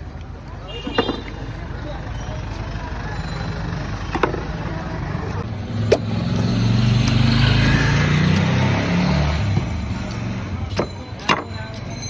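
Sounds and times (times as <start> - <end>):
vehicle engine passing by: 2.7 - 10.7.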